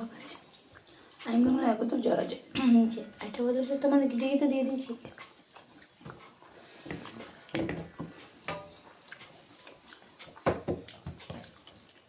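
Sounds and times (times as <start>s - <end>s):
chewing and mouth noises: 0.1s - 1.2s, 4.7s - 12.0s.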